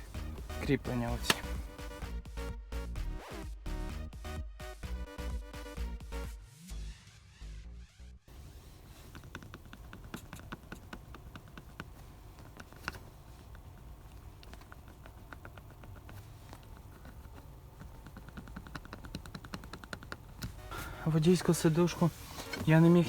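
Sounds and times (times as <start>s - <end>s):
plastic parts clicking and tapping: 0.0s - 1.8s, 9.0s - 23.0s.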